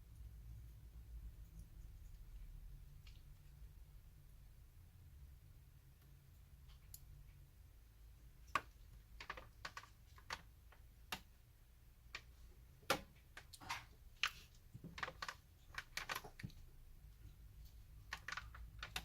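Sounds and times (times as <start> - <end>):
small plastic clicks and taps: 8.4 - 11.4.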